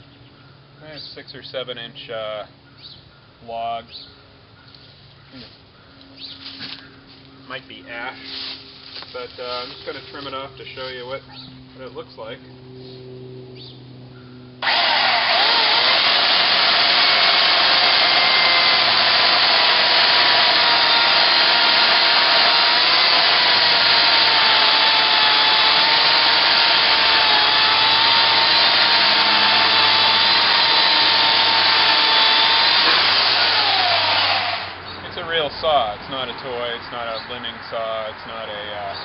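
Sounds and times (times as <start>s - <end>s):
electric chainsaw cutting log: 14.6s - 34.8s.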